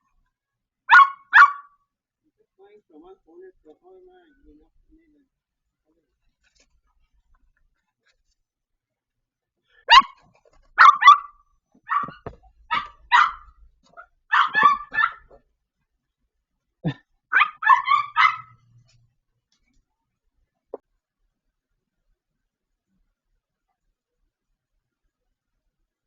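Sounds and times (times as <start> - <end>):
dog barking: 0.9 - 1.8, 9.9 - 10.2, 10.8 - 15.4, 17.3 - 18.7.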